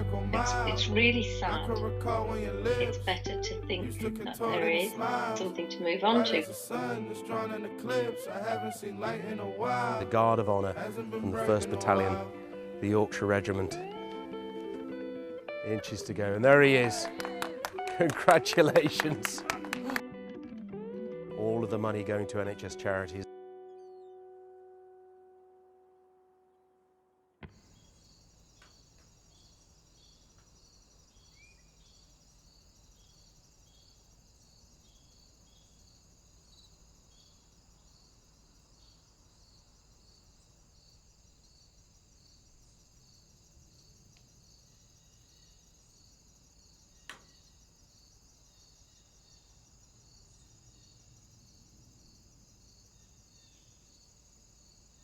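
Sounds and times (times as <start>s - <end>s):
faint insect chirping: 0.0s - 1.9s, 2.8s - 12.8s, 27.4s - 55.0s.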